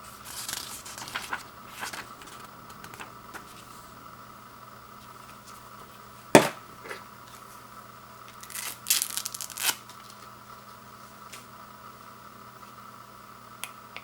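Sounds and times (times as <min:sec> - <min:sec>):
plastic packaging crinkling: 0:00.1 - 0:03.6, 0:08.3 - 0:10.3.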